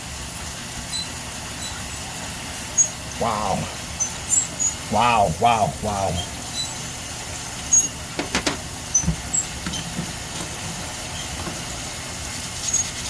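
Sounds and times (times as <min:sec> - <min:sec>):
running water hiss: 0:00.0 - 0:13.0.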